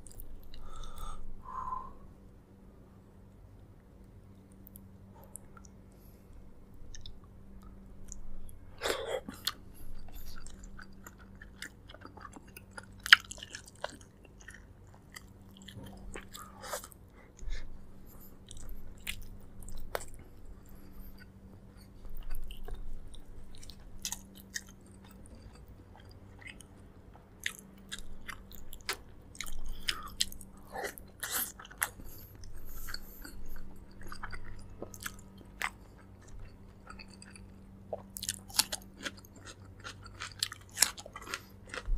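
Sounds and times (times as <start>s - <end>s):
faint low hum: 0.0s - 41.9s
wet chewing and mouth smacks: 18.4s - 41.9s.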